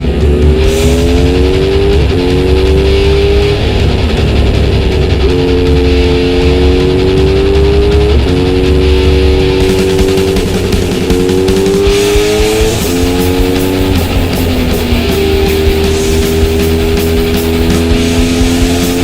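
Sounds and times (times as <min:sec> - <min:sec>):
steady low rumble: 0:00.0 - 0:18.5
motorcycle exhaust while riding: 0:00.0 - 0:19.0.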